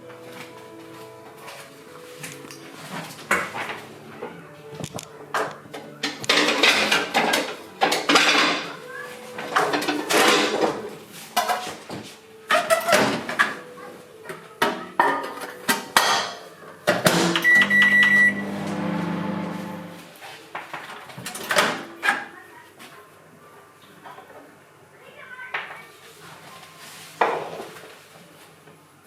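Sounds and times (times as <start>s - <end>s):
dishes and cupboards clattering: 1.4s - 13.7s, 14.4s - 17.8s
microwave beeping: 17.1s - 20.1s
microwave humming: 17.1s - 20.1s.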